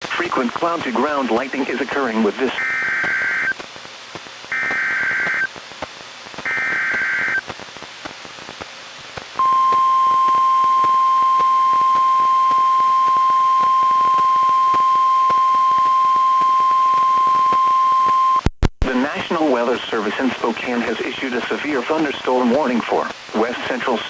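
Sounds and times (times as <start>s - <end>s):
hiss and crackling static: 0.0s - 24.0s
buzzy digital data tones: 2.0s - 3.5s, 4.5s - 5.5s, 6.5s - 7.4s
steady warning alarm tone: 2.6s - 3.5s, 4.5s - 5.5s, 6.5s - 7.4s, 9.4s - 18.4s.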